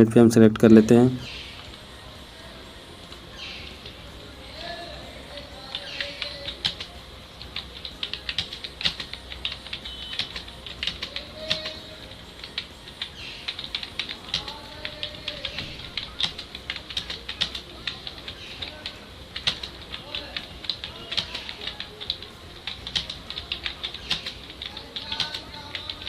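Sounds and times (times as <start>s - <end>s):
keyboard typing clicks: 5.6s - 11.8s, 12.4s - 26.0s.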